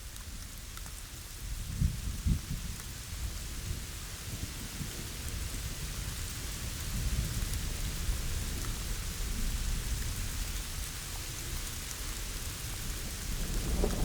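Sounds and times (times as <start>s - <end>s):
steady rain hiss: 0.0s - 14.0s
low thunder rumbling: 12.7s - 14.0s.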